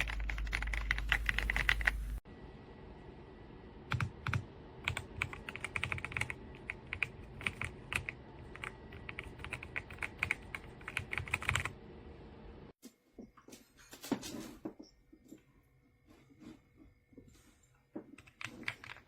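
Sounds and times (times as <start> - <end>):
mechanical keyboard typing: 0.0 - 2.1, 3.9 - 11.8.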